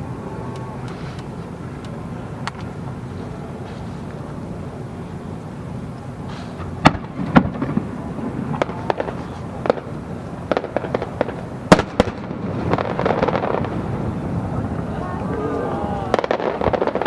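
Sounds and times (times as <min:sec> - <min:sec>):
fireworks booming: 0:00.0 - 0:17.0
light firework pops: 0:06.3 - 0:13.8.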